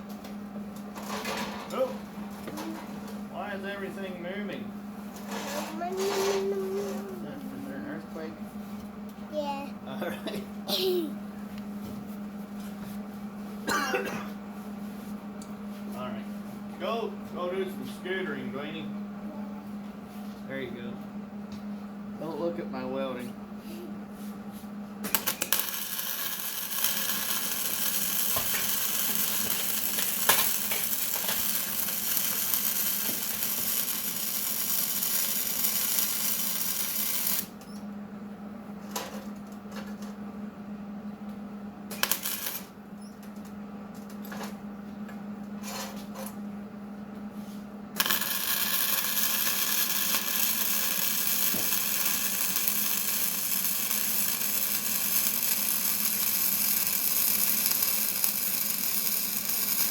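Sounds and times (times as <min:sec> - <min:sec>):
arc welding crackling sizzle: 0:25.0 - 0:37.6, 0:41.9 - 0:43.3, 0:47.9 - 0:59.9.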